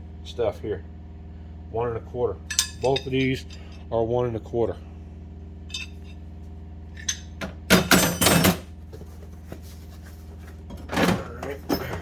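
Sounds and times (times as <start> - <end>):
steady low hum: 0.0 - 12.0
steel wrenches clinking in metal drawer: 2.5 - 3.8, 5.7 - 6.0, 7.0 - 8.7, 11.0 - 12.0.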